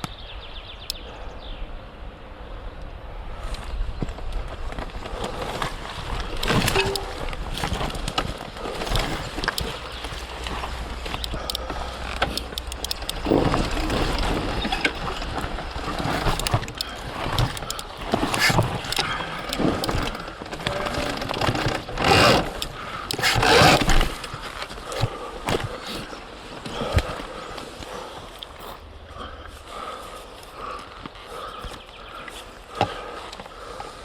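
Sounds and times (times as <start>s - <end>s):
dirt bike chain rattling: 6.0s - 25.2s.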